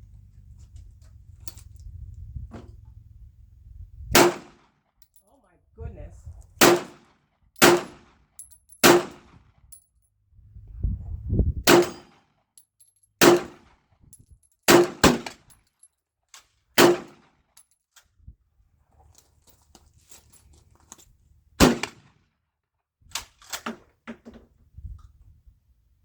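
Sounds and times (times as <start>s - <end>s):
pistol shots: 4.2s - 4.6s, 6.6s - 8.1s, 8.8s - 9.3s, 11.7s - 12.1s, 13.2s - 13.6s, 14.7s - 15.3s, 16.8s - 17.2s, 21.6s - 22.0s.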